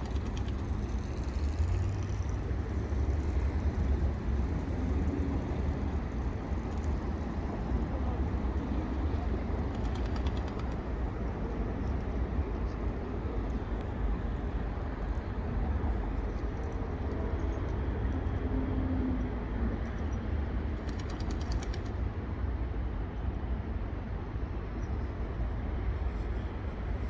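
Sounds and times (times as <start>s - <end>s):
low outdoor rumble: 0.0s - 19.9s.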